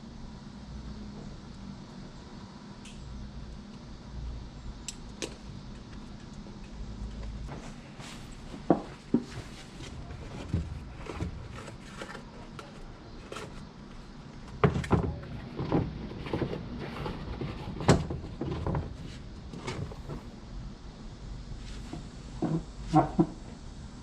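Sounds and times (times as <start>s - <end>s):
rustling handling noises: 7.1s - 20.3s.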